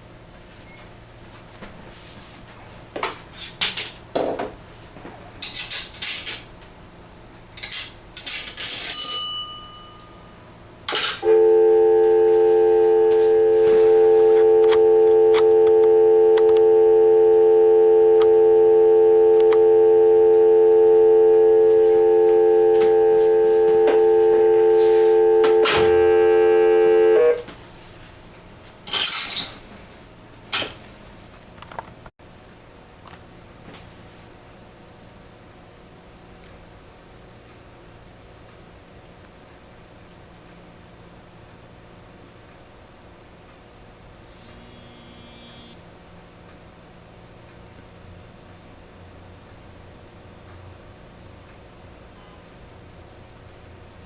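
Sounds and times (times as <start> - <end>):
phone ringing: 11.2 - 27.4
telephone dial tone: 11.2 - 27.4.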